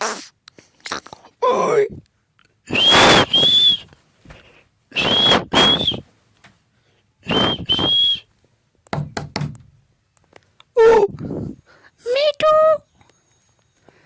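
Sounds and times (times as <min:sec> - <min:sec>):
parrot whistled calls: 0:05.0 - 0:06.0.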